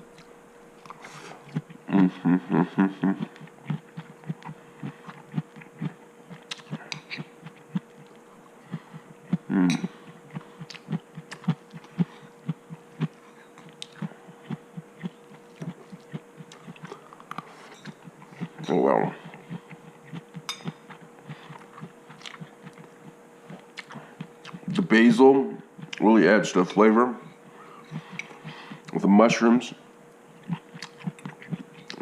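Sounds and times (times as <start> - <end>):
faint steady hum: 0.0 - 32.0
person humming: 1.2 - 5.1, 8.7 - 12.1
wet chewing: 3.1 - 24.8, 25.8 - 26.1, 27.9 - 29.0, 30.1 - 32.0.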